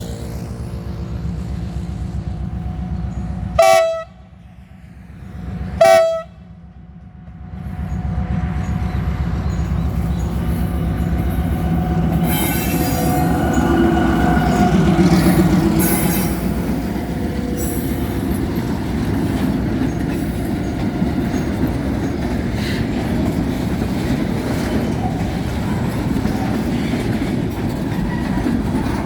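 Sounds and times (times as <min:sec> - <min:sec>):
train low rumble: 0:00.0 - 0:29.0
train horn blasts: 0:03.5 - 0:04.4, 0:05.7 - 0:06.5
wheel squeal: 0:09.4 - 0:16.6.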